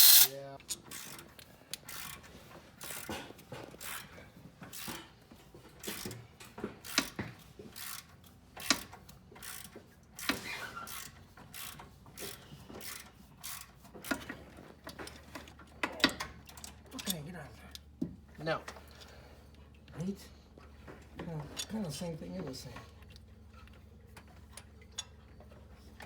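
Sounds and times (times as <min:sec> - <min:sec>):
hand ratchet clicking: 0:00.0 - 0:00.4
metallic clinks of tools: 0:00.0 - 0:00.4.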